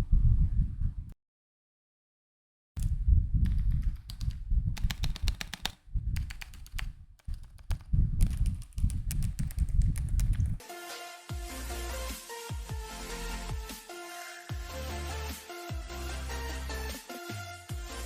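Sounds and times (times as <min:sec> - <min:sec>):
mechanical keyboard typing: 0:03.5 - 0:10.5.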